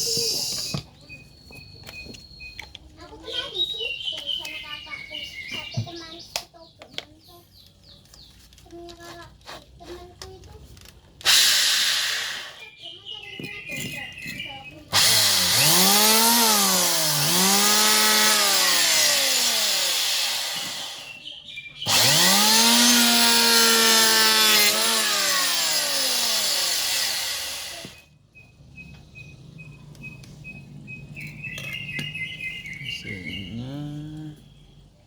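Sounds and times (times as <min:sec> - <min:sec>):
electric planer shaving wood: 0:15.0 - 0:21.2, 0:21.9 - 0:28.0.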